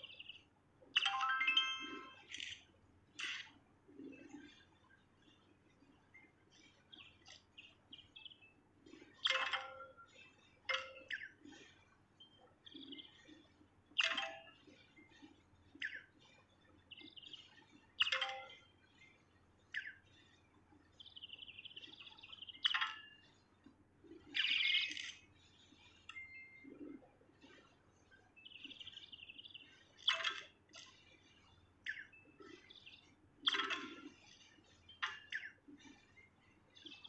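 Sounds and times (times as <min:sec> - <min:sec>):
soft bird chips and clicks: 0:00.0 - 0:37.0
buzzy bird trill: 0:01.0 - 0:02.6.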